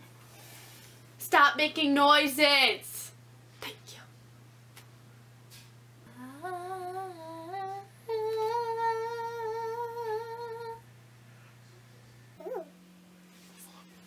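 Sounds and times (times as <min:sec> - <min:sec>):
person humming: 0:06.1 - 0:10.8.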